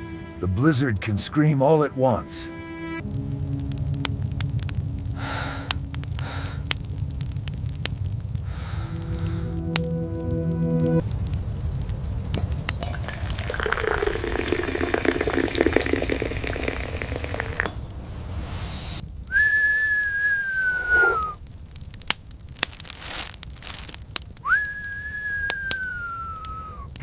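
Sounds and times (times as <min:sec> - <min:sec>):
crackling sizzling noise: 0:00.0 - 0:27.0
high falling whistle: 0:19.3 - 0:21.4, 0:24.4 - 0:26.9.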